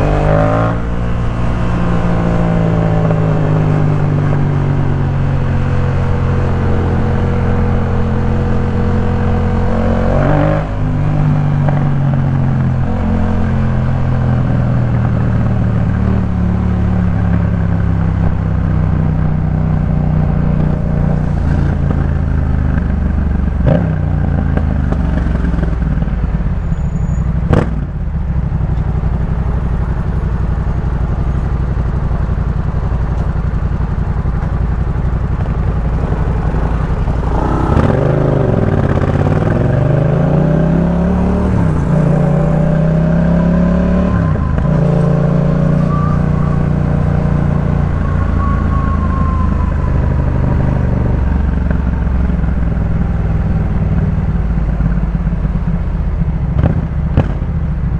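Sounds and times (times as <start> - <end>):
motorcycle engine running: 10.7 - 44.7, 50.4 - 57.9.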